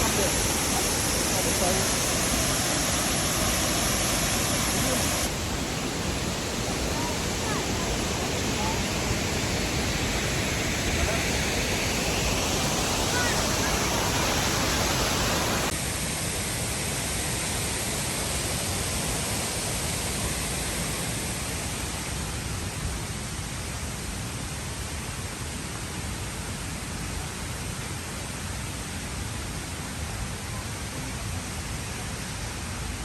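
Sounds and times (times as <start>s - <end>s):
waterfall roaring: 0.0s - 22.8s.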